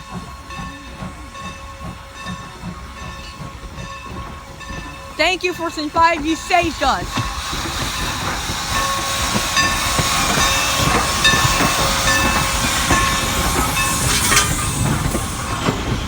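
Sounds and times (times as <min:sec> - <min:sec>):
train wheels rumbling on rail: 0:00.0 - 0:16.0
high metallic tones: 0:09.6 - 0:15.0.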